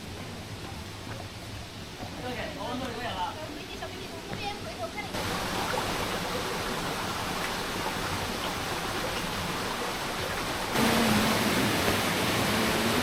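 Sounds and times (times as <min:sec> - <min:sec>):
waterfall rushing: 0:00.1 - 0:13.0.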